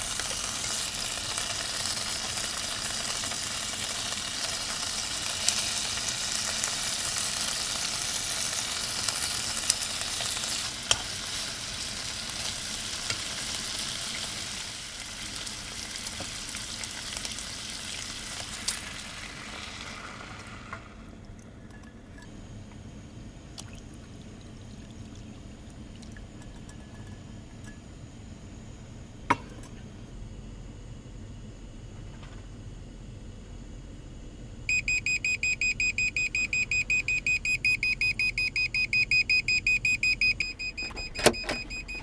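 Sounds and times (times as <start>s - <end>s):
food sizzling in a hot pan: 0.0s - 21.1s.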